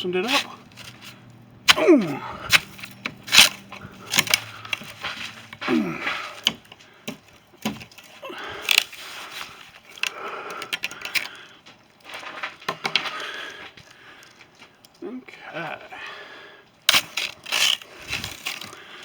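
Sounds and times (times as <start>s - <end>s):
ice cracking: 0.0s - 19.0s
broom scraping ice: 0.1s - 6.5s, 16.9s - 19.0s.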